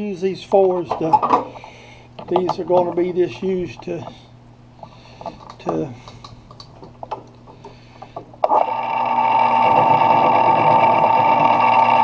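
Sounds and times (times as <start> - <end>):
metal lathe whining: 8.4 - 12.0.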